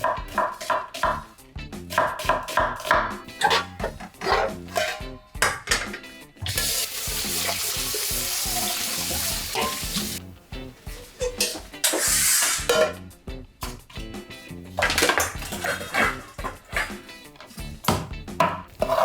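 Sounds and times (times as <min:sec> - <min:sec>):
food sizzling in a pan: 0:06.5 - 0:12.9.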